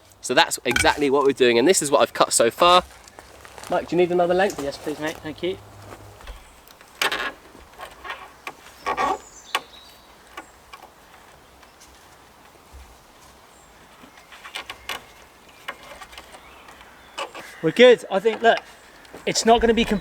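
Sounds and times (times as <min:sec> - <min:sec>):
poles and cord scraping: 0:00.7 - 0:01.3, 0:19.3 - 0:20.0
wooden poles knocking: 0:00.7 - 0:01.4, 0:18.3 - 0:20.0.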